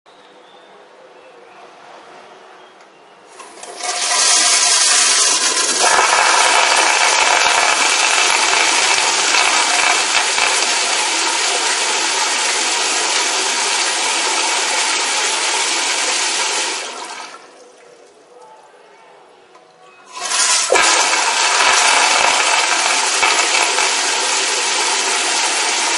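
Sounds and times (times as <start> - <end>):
toilet flushing: 3.3 - 18.1, 20.1 - 25.9.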